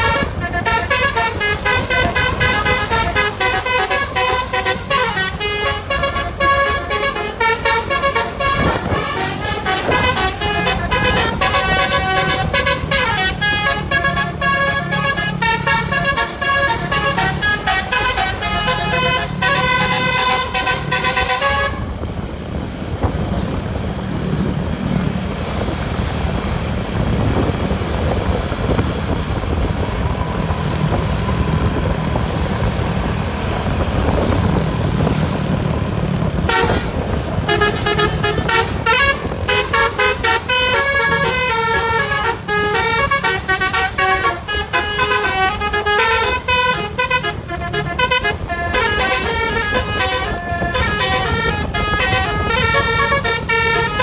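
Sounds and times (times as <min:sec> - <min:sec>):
multi-tone melody horn: 0:00.0 - 0:22.0, 0:36.4 - 0:54.0
low vehicle rumble: 0:00.0 - 0:54.0.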